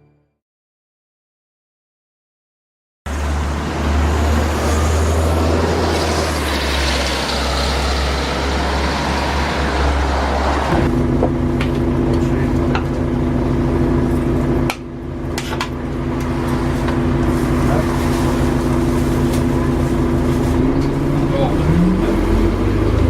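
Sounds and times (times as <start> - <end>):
bus engine and road noise: 3.1 - 23.0
droning hum: 9.5 - 23.0.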